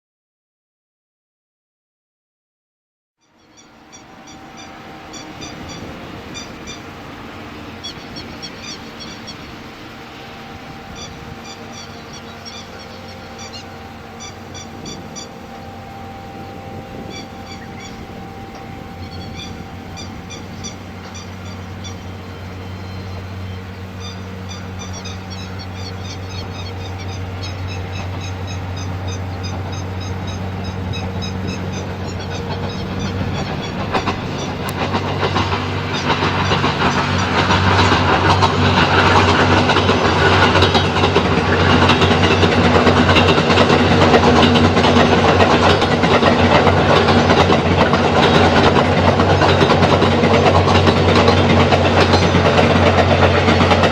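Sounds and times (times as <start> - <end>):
train engine drone: 3.2 - 53.9
wheels clattering over rail joints: 3.9 - 53.9
rapid high chirping calls: 10.9 - 15.3.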